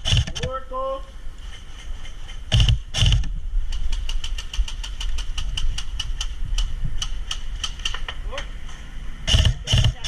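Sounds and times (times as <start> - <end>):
airsoft gunfire: 9.3 - 10.0.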